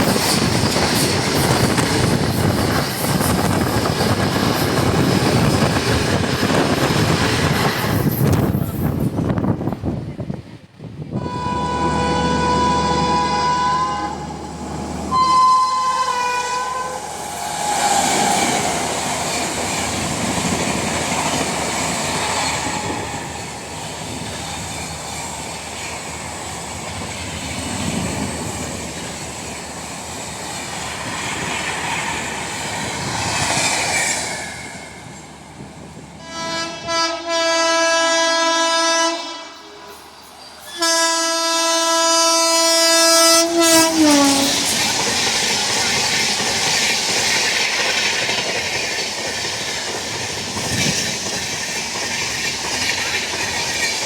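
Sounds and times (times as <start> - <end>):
train wheels rumbling and clattering: 0.0 - 11.3, 17.0 - 37.3, 42.2 - 54.0
train horn blasts: 11.2 - 18.4, 36.2 - 39.9, 40.7 - 44.7.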